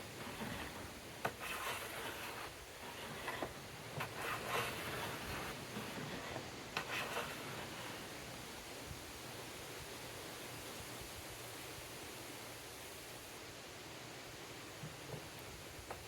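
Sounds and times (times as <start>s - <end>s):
wood scraping and rubbing: 0.0s - 8.3s.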